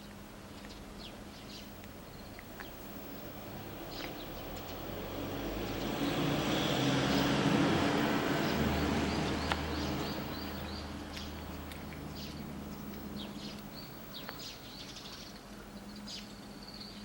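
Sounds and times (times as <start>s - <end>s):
small birds chirping: 0.0s - 17.0s
vehicle passing by: 2.7s - 14.3s.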